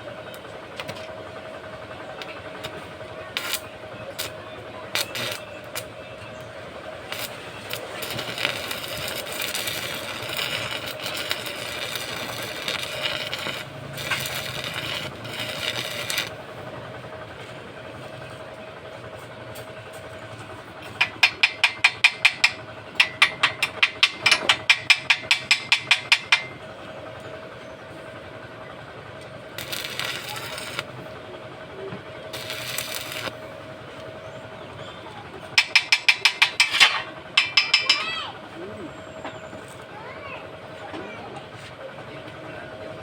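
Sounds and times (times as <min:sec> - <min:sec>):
steady hum: 0:00.0 - 0:39.8
arc welding sizzling: 0:02.2 - 0:17.6, 0:29.6 - 0:31.2, 0:32.3 - 0:34.0
sharp metal taps: 0:21.0 - 0:26.6, 0:35.6 - 0:38.2.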